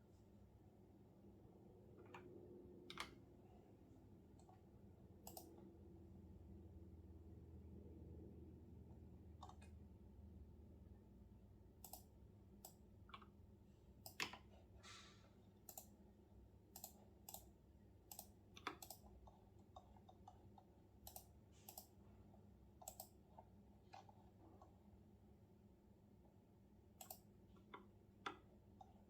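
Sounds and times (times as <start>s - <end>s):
faint room hum: 0.0s - 29.0s
keyboard keystrokes: 18.1s - 19.0s, 27.0s - 27.3s.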